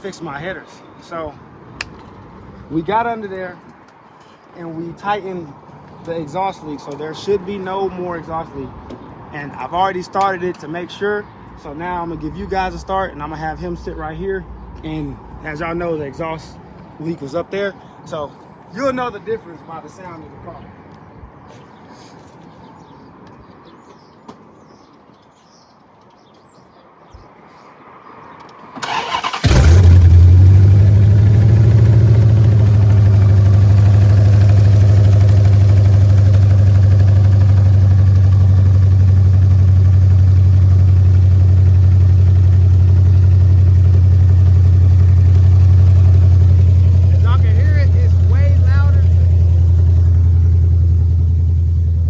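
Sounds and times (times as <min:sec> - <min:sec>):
car engine starter cranking: 0:28.8 - 0:30.9
car engine idling: 0:28.8 - 0:52.0.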